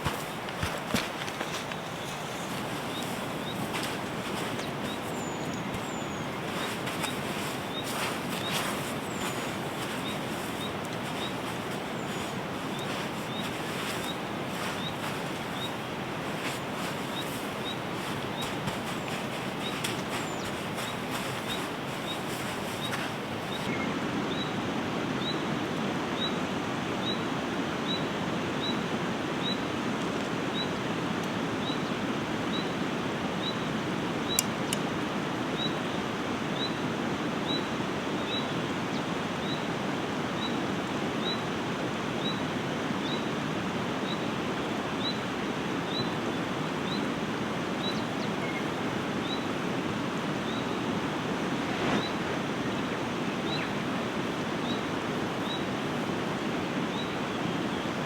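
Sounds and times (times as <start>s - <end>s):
rushing water: 0.0s - 23.7s
faint high chirp: 1.8s - 24.5s.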